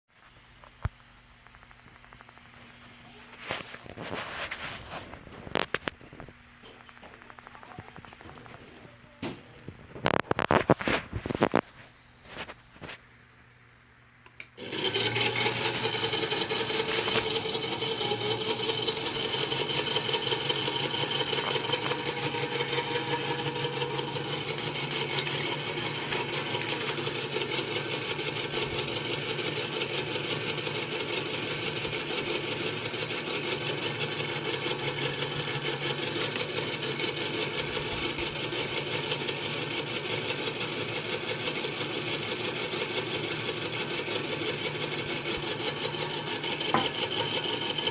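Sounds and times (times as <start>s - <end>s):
small electric motor whirring: 14.6s - 41.5s.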